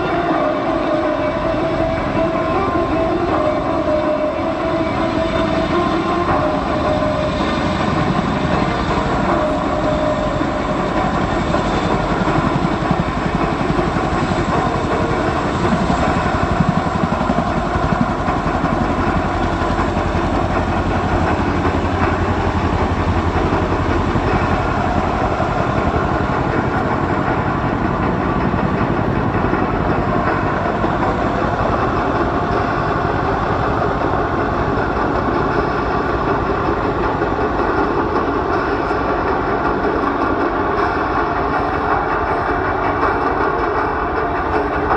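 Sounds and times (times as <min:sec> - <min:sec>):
helicopter rotor chop: 0:00.0 - 0:44.9
turbine noise: 0:00.0 - 0:44.9.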